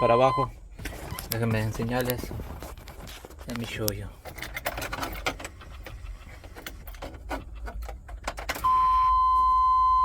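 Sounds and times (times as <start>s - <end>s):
loud steady beep: 0.0s - 1.2s, 8.6s - 10.0s.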